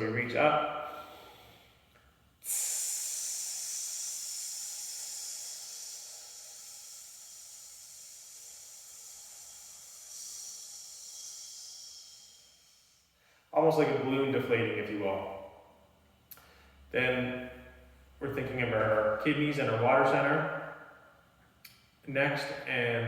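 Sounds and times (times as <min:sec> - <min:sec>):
man hissing exhale through teeth: 0:00.8 - 0:01.8, 0:02.4 - 0:13.3.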